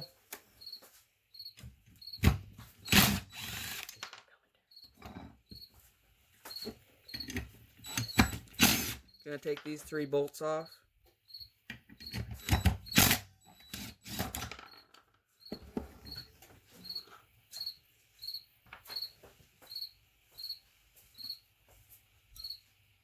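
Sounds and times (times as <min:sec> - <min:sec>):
cricket chirping: 0:00.0 - 0:02.2, 0:04.7 - 0:05.8, 0:10.5 - 0:13.0, 0:15.4 - 0:21.4, 0:22.4 - 0:22.7.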